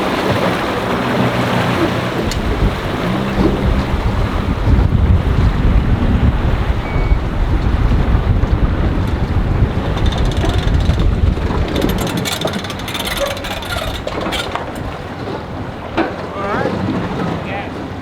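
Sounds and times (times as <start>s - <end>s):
wind buffeting microphone: 0.0s - 18.0s
rapid crackling clicks: 9.0s - 14.9s.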